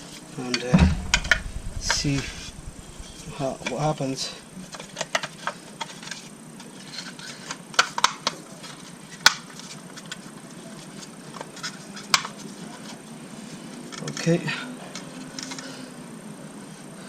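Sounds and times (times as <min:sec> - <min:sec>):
latch snapping: 0:00.7 - 0:03.7.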